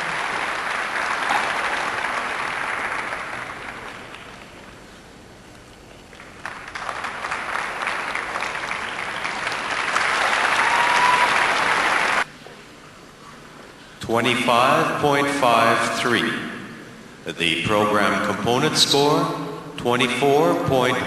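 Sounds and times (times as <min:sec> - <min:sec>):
crowd applauding: 0:00.0 - 0:04.8, 0:05.9 - 0:12.3.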